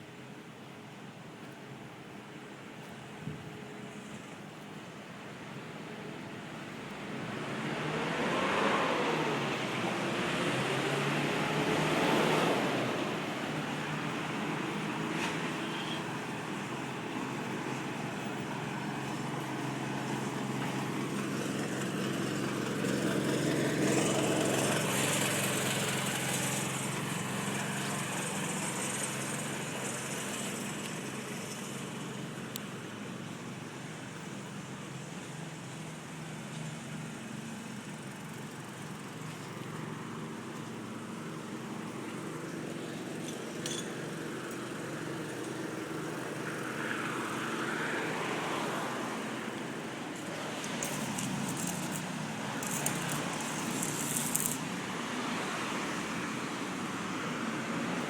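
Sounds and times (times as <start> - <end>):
engine running: 0.6 - 58.0
vehicle passing: 7.4 - 13.3, 44.9 - 58.0.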